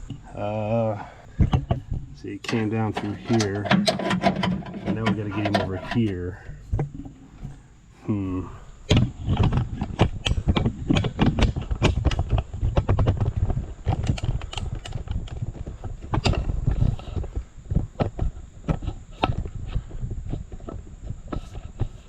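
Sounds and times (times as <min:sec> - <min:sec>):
metal parts scraping: 0:02.4 - 0:06.3.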